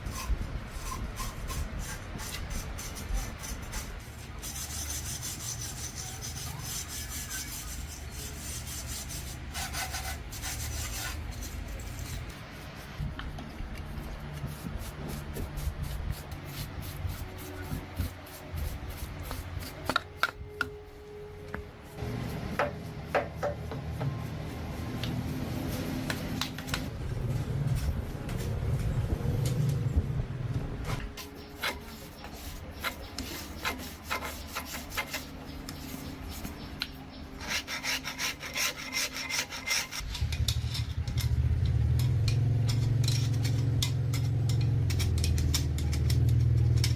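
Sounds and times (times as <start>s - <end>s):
rasping scraping strokes on metal: 0.0s - 13.0s, 30.9s - 41.0s, 42.6s - 46.9s.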